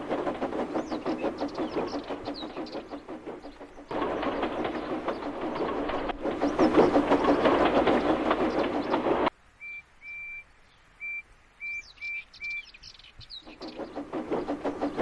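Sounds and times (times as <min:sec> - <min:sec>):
steam engine running: 0:00.0 - 0:09.3, 0:13.4 - 0:15.0
faint high bird chirps: 0:09.6 - 0:13.8.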